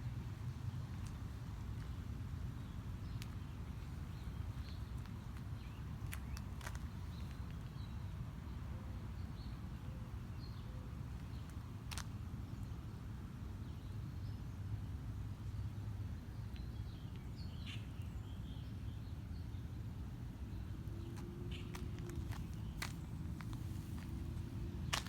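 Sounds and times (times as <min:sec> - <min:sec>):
steady low rumble: 0:20.0 - 0:25.0.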